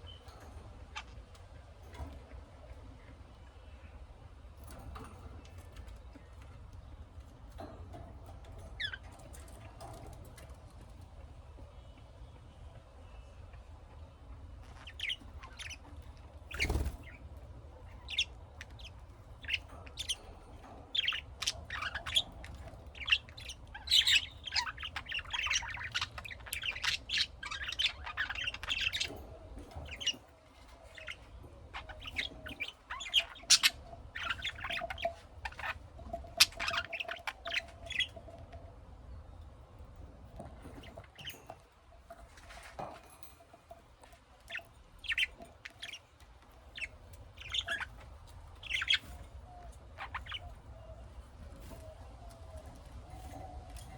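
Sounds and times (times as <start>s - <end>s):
budgies chirping and squawking: 7.1s - 10.5s, 14.6s - 38.6s, 40.4s - 53.9s.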